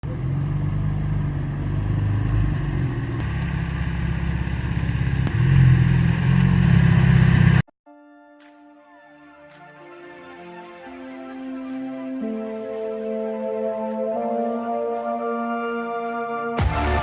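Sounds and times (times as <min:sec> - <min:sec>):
engine running loudly: 0:00.0 - 0:07.6.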